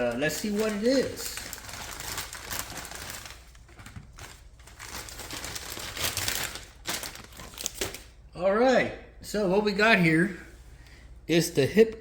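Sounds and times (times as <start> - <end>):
packaging crinkling and rustling: 0.0 - 8.2.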